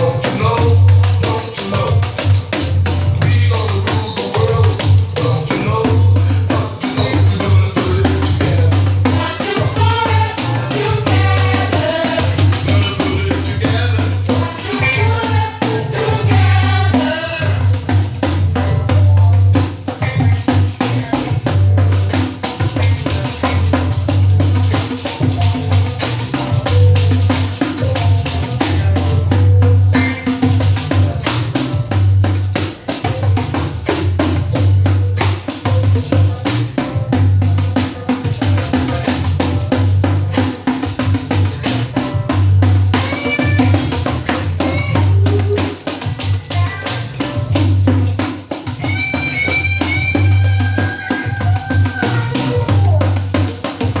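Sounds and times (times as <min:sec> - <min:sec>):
recorded song with singing: 0:00.0 - 0:18.9, 0:42.9 - 0:54.0.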